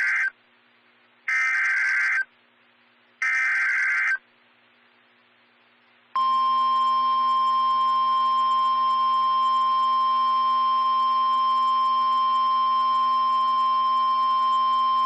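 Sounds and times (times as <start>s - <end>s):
steady alarm tone: 6.2s - 15.0s.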